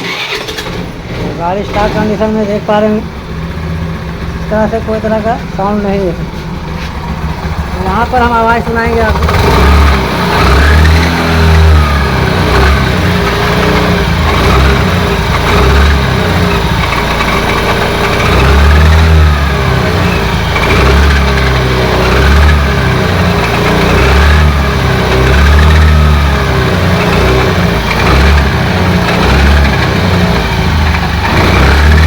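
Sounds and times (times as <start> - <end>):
scooter engine revving: 0.0 - 32.0
gearbox grinding growl: 9.1 - 32.0.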